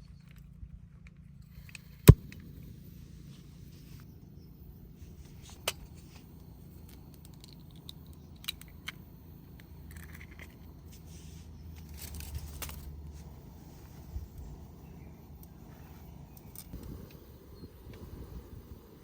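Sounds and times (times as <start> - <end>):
sharp clicks and handling noises: 5.2 - 13.1, 16.3 - 16.9.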